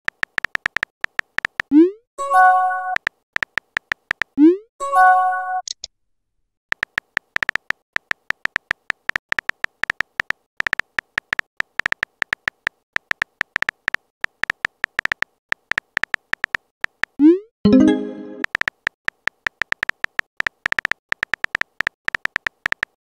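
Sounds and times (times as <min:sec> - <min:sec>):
phone keyboard typing clicks: 0:00.1 - 0:01.8, 0:02.8 - 0:04.4, 0:06.7 - 0:17.2, 0:18.4 - 0:23.0.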